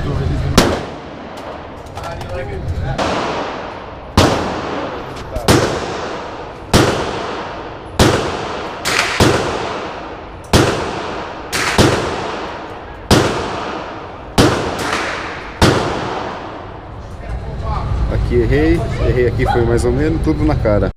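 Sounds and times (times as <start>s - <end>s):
gunshots with echo: 0.5s - 1.8s, 3.0s - 16.9s.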